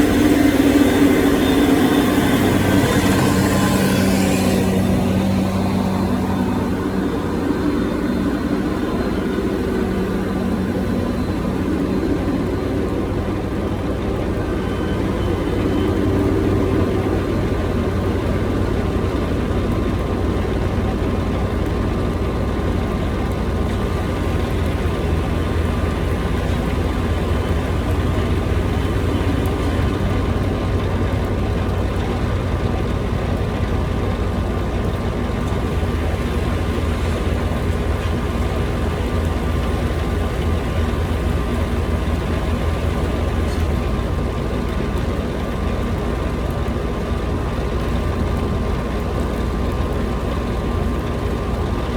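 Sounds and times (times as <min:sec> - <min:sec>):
loader engine running: 0:00.0 - 0:51.9.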